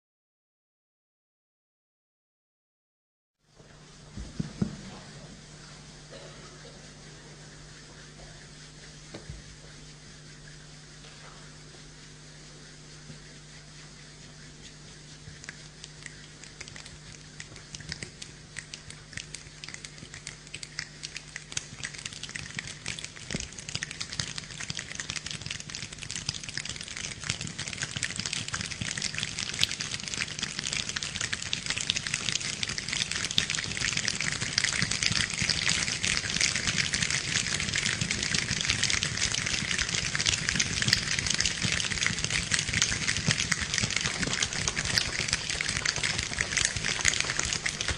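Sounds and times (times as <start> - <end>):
people imitating rain with hands: 15.1 - 47.9.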